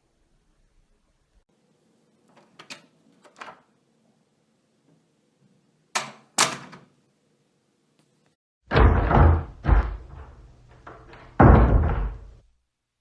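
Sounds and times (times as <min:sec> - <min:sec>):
heavy door slams: 0:08.7 - 0:12.4.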